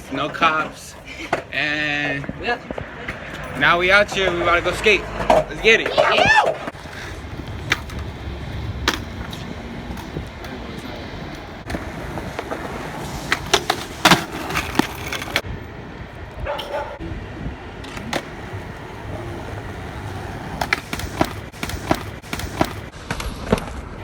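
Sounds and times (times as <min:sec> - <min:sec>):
skateboard rolling on pavement: 0:00.0 - 0:23.9
skateboard clacks and knocks: 0:05.1 - 0:15.5, 0:17.8 - 0:22.9.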